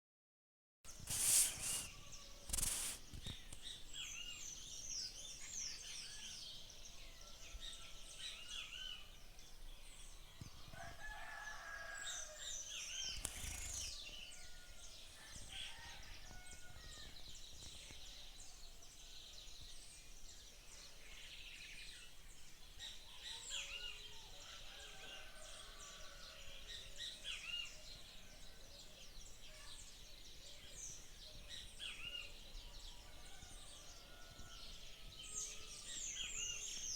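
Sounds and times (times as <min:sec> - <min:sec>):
small birds chirping: 0:00.9 - 0:24.1
rooster crowing: 0:10.8 - 0:12.4.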